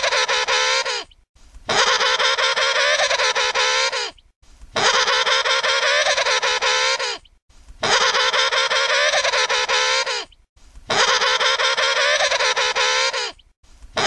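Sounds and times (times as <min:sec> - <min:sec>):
penguin trumpeting calls: 0:00.0 - 0:01.1, 0:01.7 - 0:04.1, 0:04.8 - 0:07.2, 0:07.8 - 0:10.3, 0:10.9 - 0:13.4.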